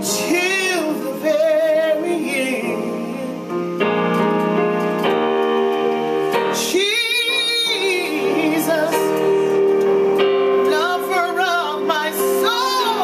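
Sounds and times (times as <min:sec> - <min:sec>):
woman singing with vibrato: 0:00.0 - 0:03.5, 0:06.6 - 0:09.6, 0:10.6 - 0:13.0
sustained keyboard chords: 0:00.0 - 0:13.0.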